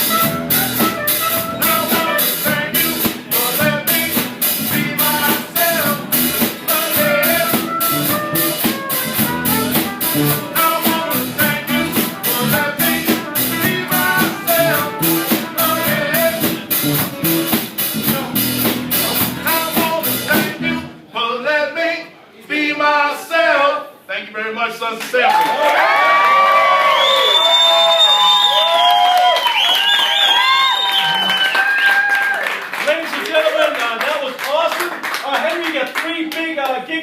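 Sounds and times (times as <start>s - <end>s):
drum kit beat: 0.0s - 20.8s
guitar: 0.0s - 21.0s
person singing: 1.5s - 17.0s, 18.0s - 21.0s.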